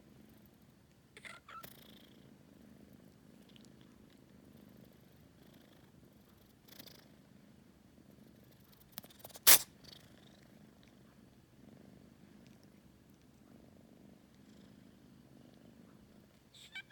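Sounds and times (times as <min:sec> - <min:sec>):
kitten purring: 0:00.0 - 0:16.9
kitten sneezing: 0:09.2 - 0:09.8.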